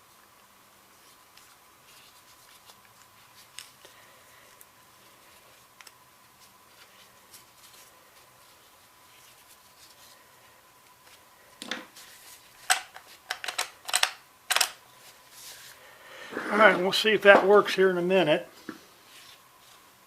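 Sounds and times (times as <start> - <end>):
metal tool parts clicking: 12.7 - 14.8.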